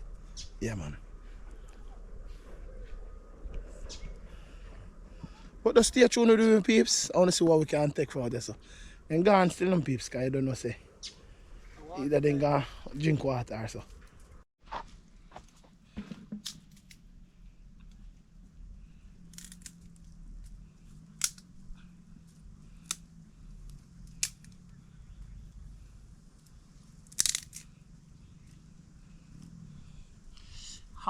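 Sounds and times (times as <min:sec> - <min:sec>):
faint low hum: 0:00.0 - 0:31.0
wood fire crackling: 0:15.2 - 0:29.4
fire popping: 0:26.4 - 0:27.9.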